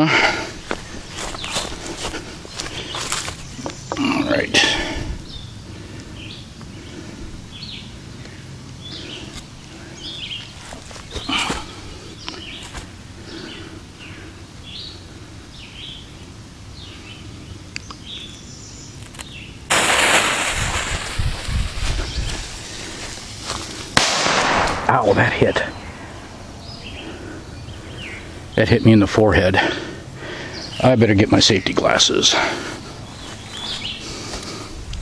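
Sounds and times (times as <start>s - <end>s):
small birds chirping: 0.0s - 19.7s, 21.4s - 24.0s, 24.9s - 35.0s
firecracker fuse hissing: 19.7s - 23.4s.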